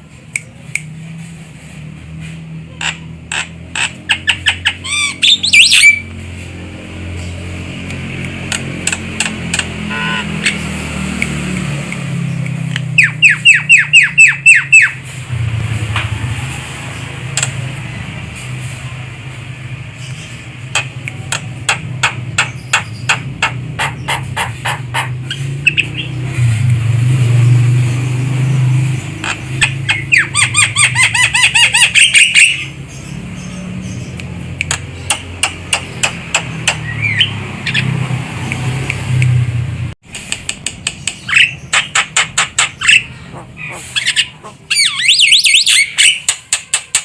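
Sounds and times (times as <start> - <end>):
harsh bird chattering: 2.7 - 6.2, 7.2 - 10.8, 12.2 - 15.1, 20.0 - 26.3, 29.0 - 38.0, 40.5 - 47.0
bird clicking calls: 2.8 - 6.2, 7.3 - 15.0, 17.3 - 17.7, 20.0 - 26.2, 33.5 - 39.4, 40.1 - 47.0.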